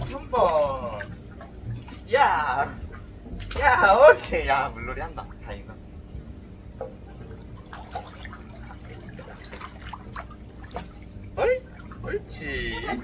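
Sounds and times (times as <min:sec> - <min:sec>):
splashing and dripping water: 0:00.0 - 0:02.2, 0:02.8 - 0:04.0, 0:06.8 - 0:12.2.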